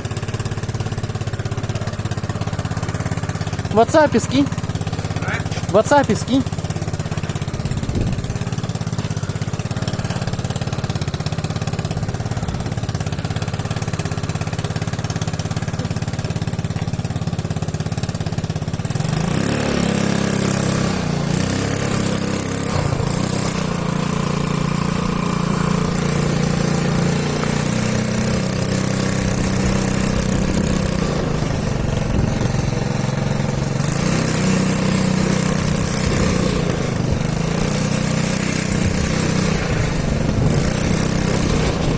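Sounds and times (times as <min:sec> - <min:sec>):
small motorcycle engine: 0:00.0 - 0:41.9
rushing wind noise: 0:07.8 - 0:08.4, 0:38.8 - 0:41.9.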